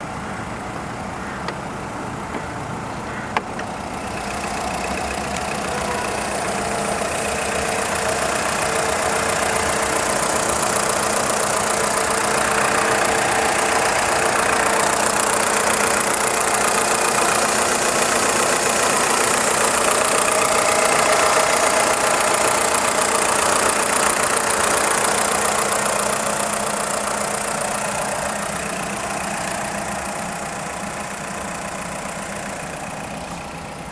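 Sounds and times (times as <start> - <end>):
car engine idling: 0.0 - 33.9
light clacking from engine: 3.3 - 7.1.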